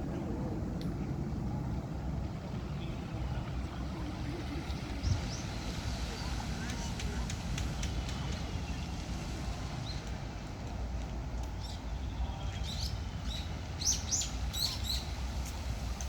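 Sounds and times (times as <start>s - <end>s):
low background rumble: 0.0s - 16.0s
small birds chirping: 4.7s - 9.0s, 11.4s - 15.2s.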